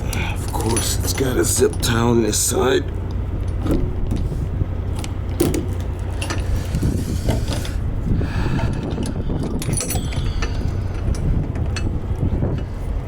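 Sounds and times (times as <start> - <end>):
steady low rumble: 0.0 - 13.0
light metallic clicks and clinks: 0.1 - 4.3, 5.8 - 6.8, 8.8 - 12.0.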